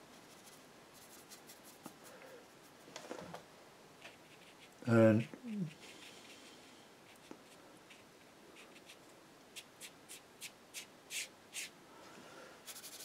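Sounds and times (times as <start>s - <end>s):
scratchy paintbrush strokes on paper: 0.1s - 2.9s, 4.0s - 4.9s, 5.6s - 11.7s, 12.6s - 13.0s.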